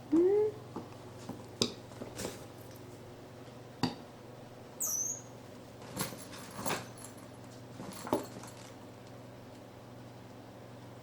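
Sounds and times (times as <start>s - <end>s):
monkey squeak: 4.8s - 5.4s.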